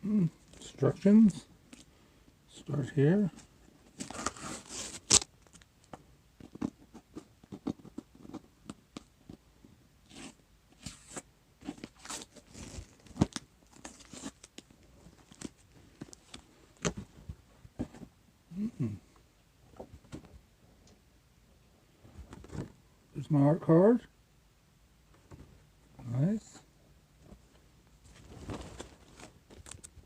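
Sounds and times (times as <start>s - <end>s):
packaging rustling and crinkling: 3.8s - 5.7s, 10.8s - 17.2s, 28.1s - 30.0s.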